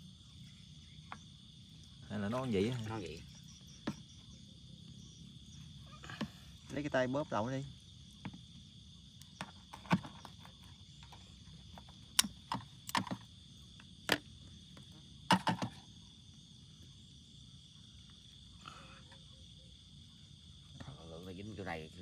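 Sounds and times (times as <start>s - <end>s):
crickets chirring: 0.0s - 22.0s.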